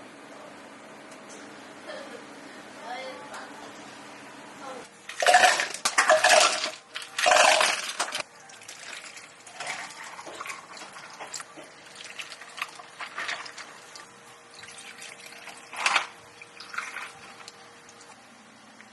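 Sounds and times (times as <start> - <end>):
faint machine hum: 0.0 - 18.9.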